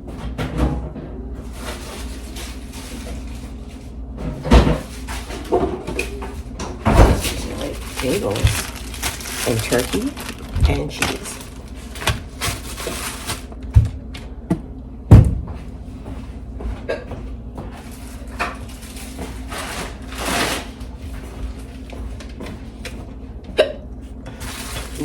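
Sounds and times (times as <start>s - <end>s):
rustling: 7.2s - 13.5s.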